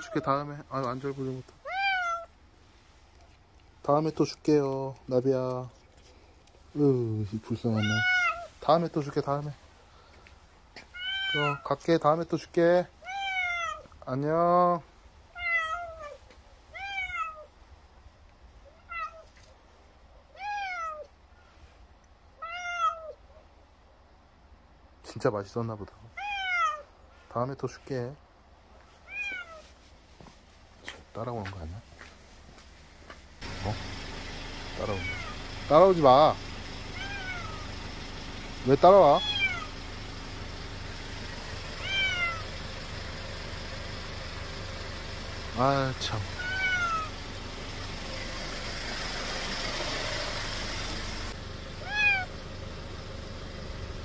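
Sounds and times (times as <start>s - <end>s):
cat meowing: 1.6s - 2.4s, 7.7s - 8.6s, 10.8s - 11.7s, 13.0s - 14.0s, 15.3s - 17.5s, 18.7s - 19.4s, 20.3s - 21.1s, 22.4s - 23.2s, 26.2s - 26.9s, 29.0s - 29.7s, 34.8s - 35.4s, 36.9s - 37.7s, 39.1s - 39.8s, 41.8s - 42.5s, 46.3s - 47.2s, 51.8s - 52.3s.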